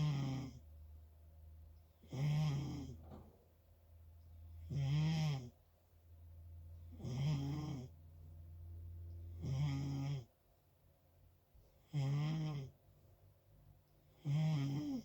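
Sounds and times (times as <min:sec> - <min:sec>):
loud snoring: 0:00.0 - 0:00.6, 0:02.0 - 0:03.0, 0:04.6 - 0:05.6, 0:06.9 - 0:08.0, 0:09.4 - 0:10.3, 0:11.8 - 0:12.7, 0:14.2 - 0:15.0
faint low hum: 0:00.0 - 0:15.0.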